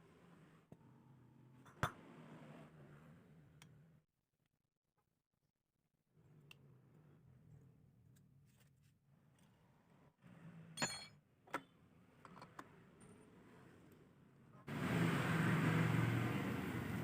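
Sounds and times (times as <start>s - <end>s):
scooter engine running: 14.7s - 17.0s.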